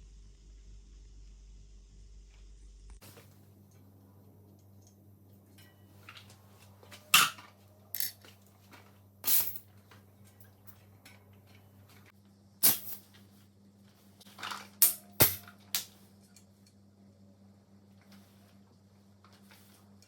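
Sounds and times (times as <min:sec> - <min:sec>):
steady low hum: 0:00.0 - 0:14.4
metallic clicks and clinks: 0:07.9 - 0:08.3.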